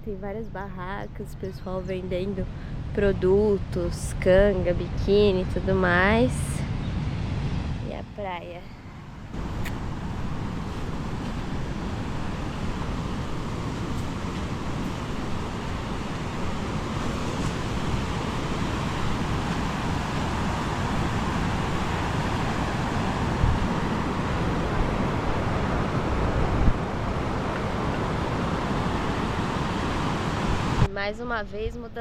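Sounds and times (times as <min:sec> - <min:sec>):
wind blowing on microphone: 0:00.9 - 0:30.9
ocean waves washing onto beach: 0:08.4 - 0:30.9.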